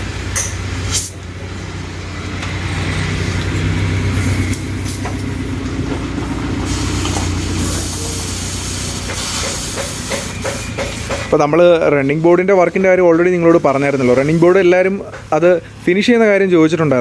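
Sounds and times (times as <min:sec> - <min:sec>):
hiss: 0:00.8 - 0:01.2, 0:04.1 - 0:05.5, 0:06.6 - 0:11.3.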